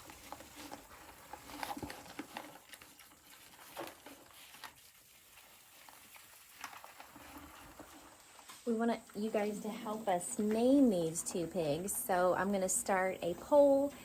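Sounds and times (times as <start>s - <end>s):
pigs shuffling and rooting: 0.0s - 8.8s.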